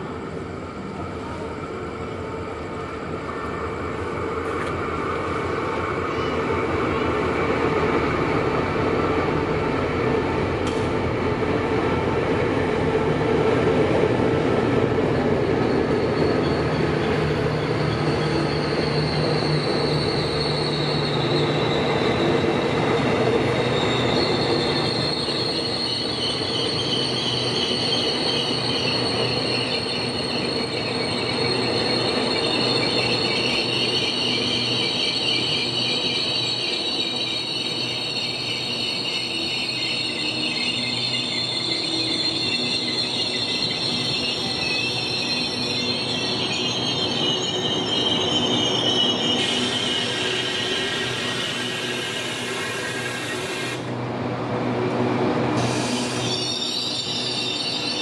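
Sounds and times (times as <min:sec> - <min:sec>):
diesel train rolling in: 0:00.0 - 0:58.0
wheels and brakes squealing: 0:05.3 - 0:07.5, 0:15.1 - 0:53.9, 0:55.6 - 0:58.0.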